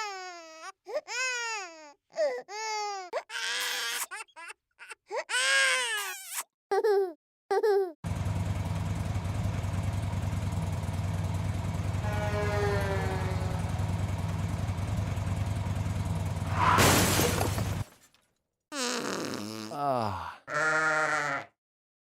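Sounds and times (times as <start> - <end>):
engine running with low rumble: 8.0 - 17.9
faint gliding tone: 12.0 - 14.5.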